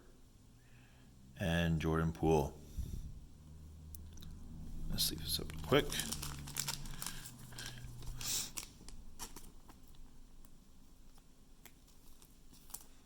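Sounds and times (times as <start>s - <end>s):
trading cards rustling: 4.8s - 13.0s.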